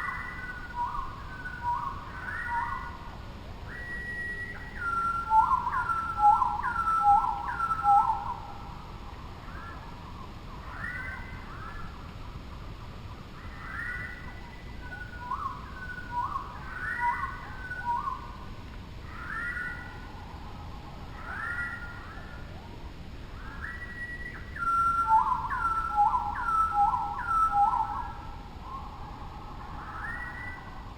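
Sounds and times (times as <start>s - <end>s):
bird singing whistled notes: 0.0s - 3.1s, 3.7s - 8.6s, 9.5s - 12.0s, 13.4s - 18.4s, 19.1s - 22.6s, 23.4s - 30.9s
faint low rumble: 7.2s - 25.6s.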